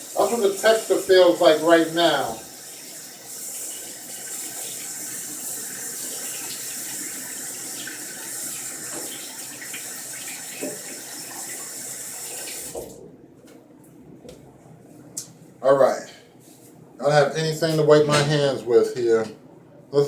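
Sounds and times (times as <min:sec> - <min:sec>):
tap water running into sink: 0:00.0 - 0:13.0.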